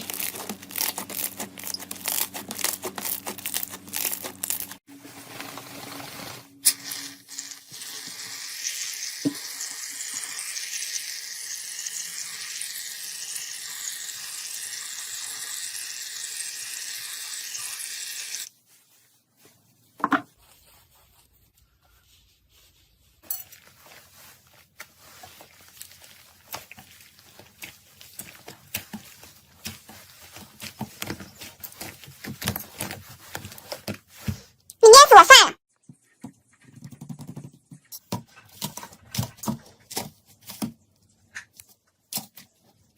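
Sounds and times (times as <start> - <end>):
slime squishing: 23.6 - 34.3
slime fizzing and crackling: 23.7 - 33.3.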